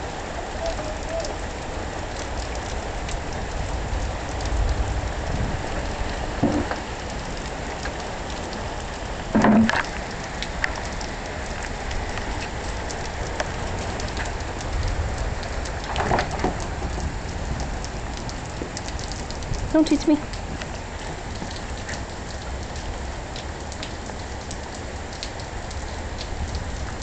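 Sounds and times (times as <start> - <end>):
rain on a hard surface: 0.0 - 27.0.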